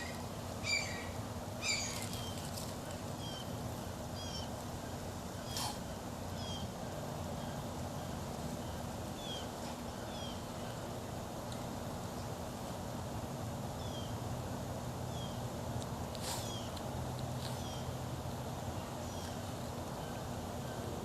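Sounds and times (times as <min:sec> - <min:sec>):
small bird chirping: 0:00.0 - 0:03.6, 0:04.2 - 0:04.6
low background hum: 0:00.0 - 0:21.0
tortoise sneezing: 0:05.4 - 0:05.9, 0:16.2 - 0:16.7.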